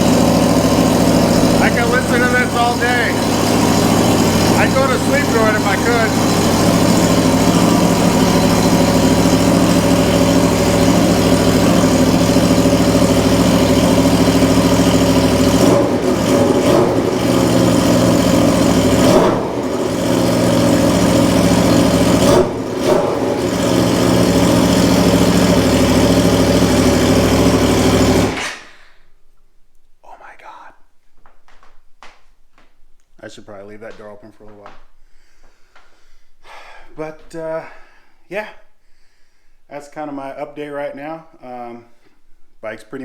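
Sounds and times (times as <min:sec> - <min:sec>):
loud motorcycle engine revving: 0:00.0 - 0:28.6.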